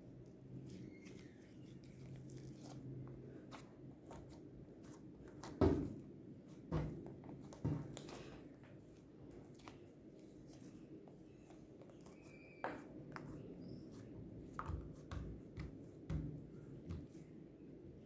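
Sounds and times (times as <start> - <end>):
hands handling slime: 0.3 - 17.3.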